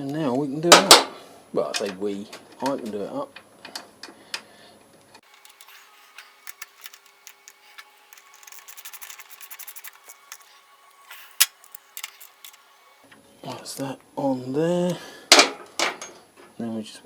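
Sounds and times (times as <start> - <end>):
ratchet wrench clicking: 5.2 - 12.6.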